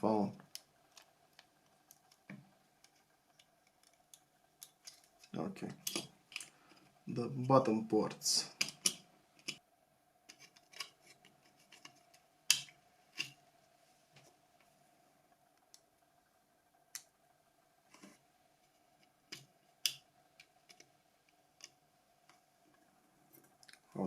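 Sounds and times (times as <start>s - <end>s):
faint steady hum: 0.0s - 24.0s
plastic parts clicking and snapping: 0.4s - 6.9s, 8.5s - 9.6s, 10.3s - 13.4s.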